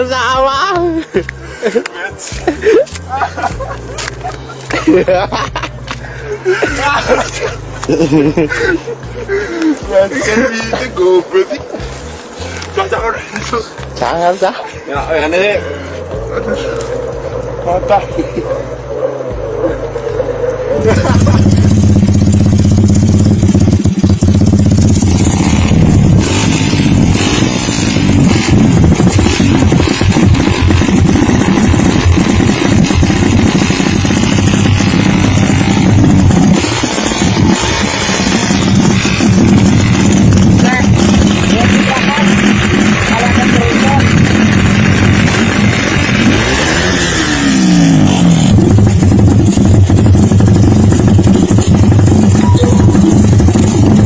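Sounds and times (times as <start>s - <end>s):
motorcycle engine running: 2.3s - 54.0s.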